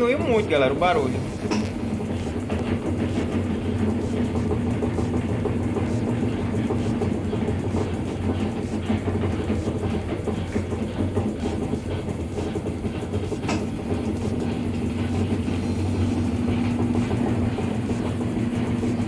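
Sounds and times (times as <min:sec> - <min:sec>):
rhythmic knocking from tub: 0:00.0 - 0:19.0
washing machine spinning: 0:00.0 - 0:19.0
sharp click: 0:01.4 - 0:01.8.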